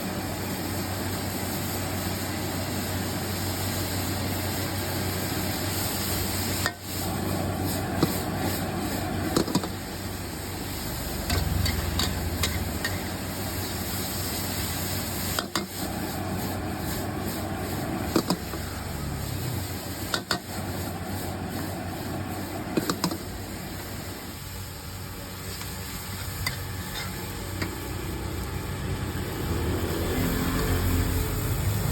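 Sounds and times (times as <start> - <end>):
cooking noise: 0.0 - 31.9
traffic hum: 9.5 - 14.3, 26.4 - 31.9.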